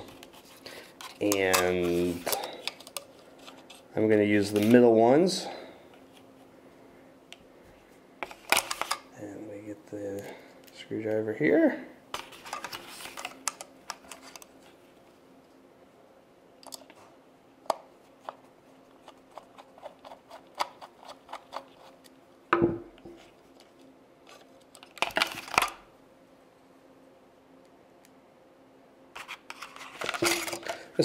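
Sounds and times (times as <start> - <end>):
parts clattering: 29.2 - 30.9.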